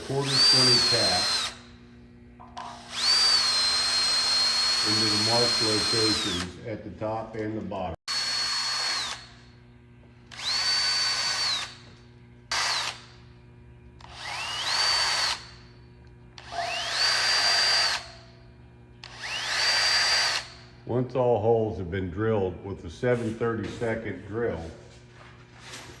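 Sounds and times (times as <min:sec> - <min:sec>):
electric drill whining: 0:00.0 - 0:01.7, 0:02.6 - 0:06.6, 0:08.1 - 0:09.4, 0:10.3 - 0:11.9, 0:12.5 - 0:13.1, 0:14.0 - 0:15.6, 0:16.4 - 0:18.2, 0:19.0 - 0:20.6.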